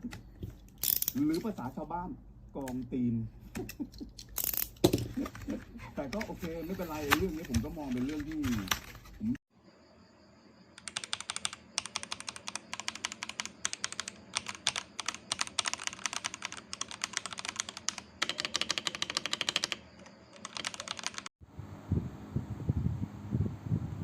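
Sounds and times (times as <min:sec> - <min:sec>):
mechanical keyboard key clicks: 0:20.4 - 0:21.3.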